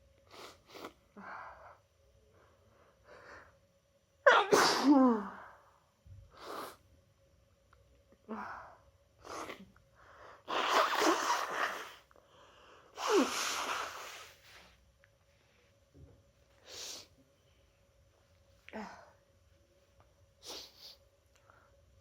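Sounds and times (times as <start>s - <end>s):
person sneezing: 4.3s - 5.4s, 10.5s - 12.0s
person sniffing: 6.4s - 6.8s, 10.5s - 12.0s, 13.0s - 14.8s, 20.4s - 21.0s.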